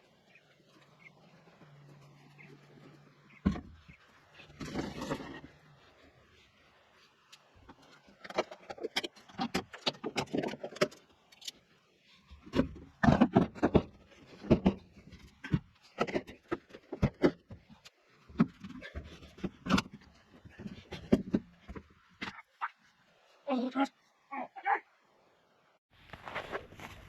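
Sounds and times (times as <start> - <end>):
knocks clunks and rattles: 3.2 - 5.5, 12.4 - 17.7.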